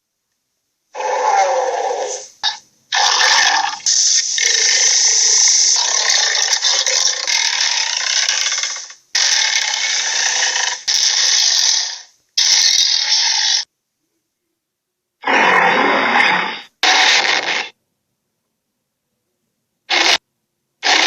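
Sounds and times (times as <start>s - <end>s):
gorilla growling and roaring: 1.0s - 3.7s, 15.2s - 17.7s, 19.9s - 20.2s.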